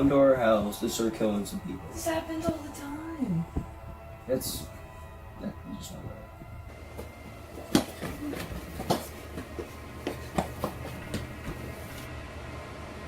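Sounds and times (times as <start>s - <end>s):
steady low hum: 0.0s - 13.0s
irregular knocks and bumps: 6.7s - 12.1s.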